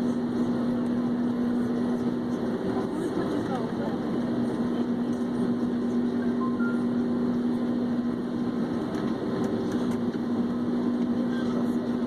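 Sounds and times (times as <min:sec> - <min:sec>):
aircraft engine drone in cabin: 0:00.0 - 0:12.0.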